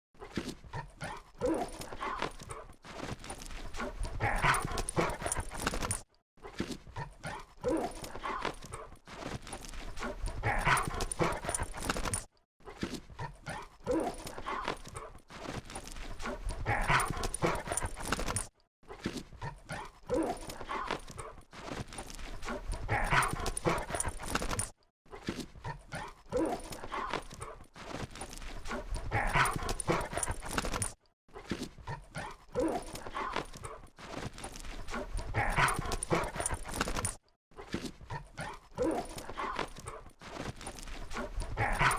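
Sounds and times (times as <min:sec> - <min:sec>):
dogs vocalising: 0:03.8 - 0:06.0, 0:10.0 - 0:12.2, 0:22.7 - 0:24.6.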